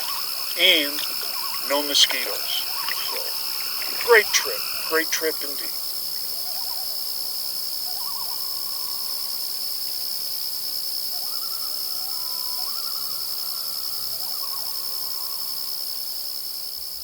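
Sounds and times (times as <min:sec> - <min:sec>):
loon calling: 0:00.0 - 0:05.8.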